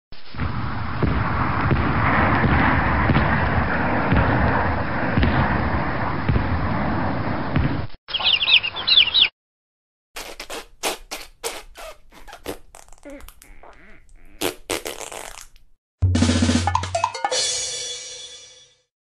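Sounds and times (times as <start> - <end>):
explosions and thuds: 0.3 - 7.9
high quick chirping: 8.1 - 9.3, 10.2 - 15.4.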